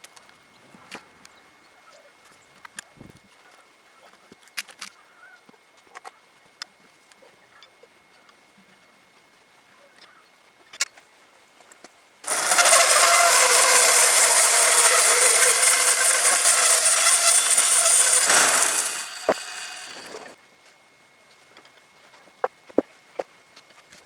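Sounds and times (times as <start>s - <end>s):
bandsaw mill running: 12.3s - 20.4s.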